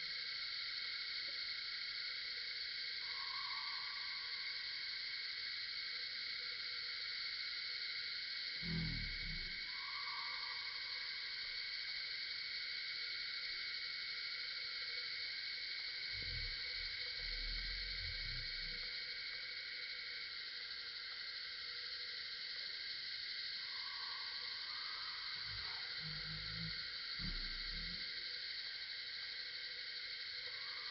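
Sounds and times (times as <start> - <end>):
shrill insect chorus: 0.0 - 30.9
mid-pitched animal call: 8.6 - 9.9, 25.4 - 28.1.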